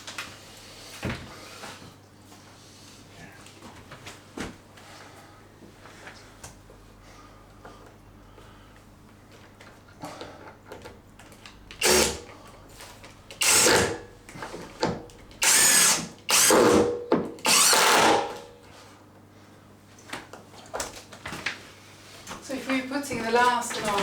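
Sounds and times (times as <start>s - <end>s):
power drill bursts: 11.8s - 12.3s, 13.3s - 14.1s, 15.4s - 18.5s.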